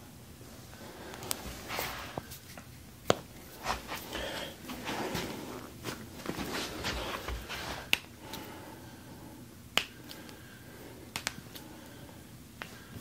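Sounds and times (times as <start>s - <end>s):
rustling movement: 3.4s - 8.0s.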